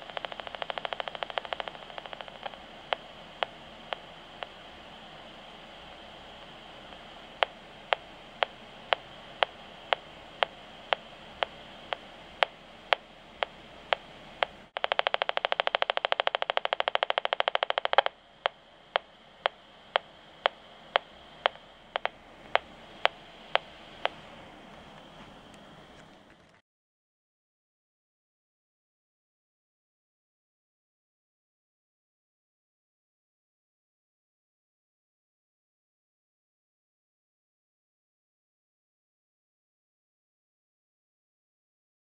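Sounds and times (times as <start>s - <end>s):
meter speaker clicking: 0.0s - 4.6s, 6.3s - 24.2s
rapid buzz of pulses: 0.0s - 26.0s
low hiss: 0.0s - 26.6s.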